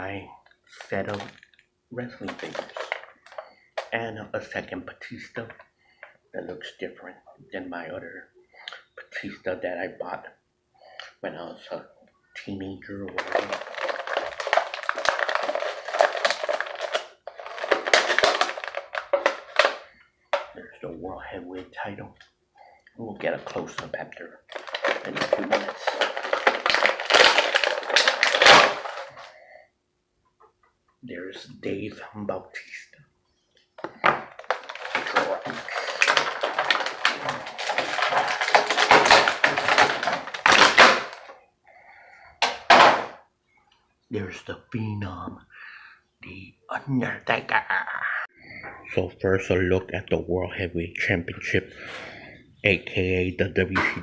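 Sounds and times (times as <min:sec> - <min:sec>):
plastic packaging crinkling: 0:00.7 - 0:04.0, 0:12.9 - 0:20.6, 0:23.2 - 0:29.4, 0:33.8 - 0:41.4, 0:42.4 - 0:43.1.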